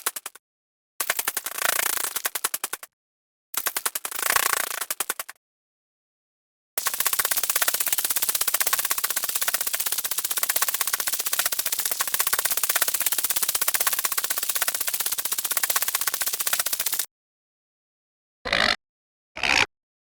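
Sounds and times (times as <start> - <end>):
insect-like wings flapping: 0.0 - 0.4, 1.0 - 2.9, 3.6 - 5.4, 6.8 - 17.1.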